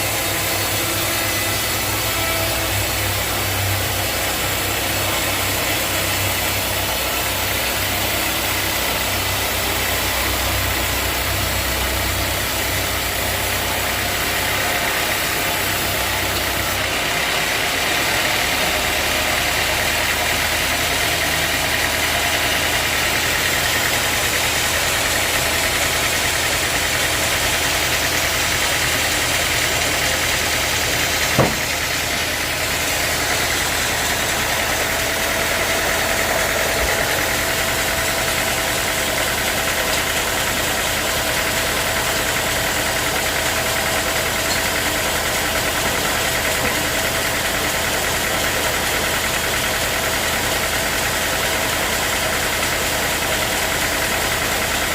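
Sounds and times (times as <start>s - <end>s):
sawmill machinery droning: 0.0s - 54.9s
sharp knock: 31.3s - 31.8s.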